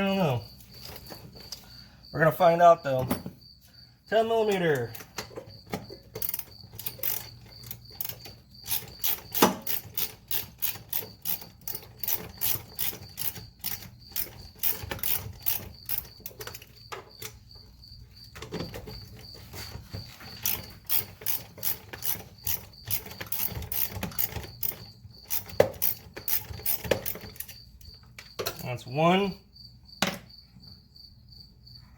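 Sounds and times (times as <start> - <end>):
cricket chirping: 0.0 - 31.9
hand ratchet clicking: 6.0 - 17.4, 20.1 - 27.9.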